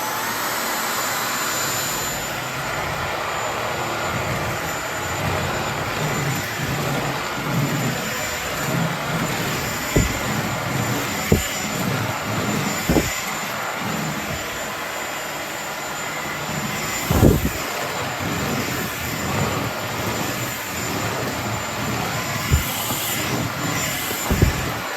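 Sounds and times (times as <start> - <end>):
vacuum cleaner whine: 0.0 - 24.9
floor head knocks: 5.2 - 14.5, 16.4 - 24.8.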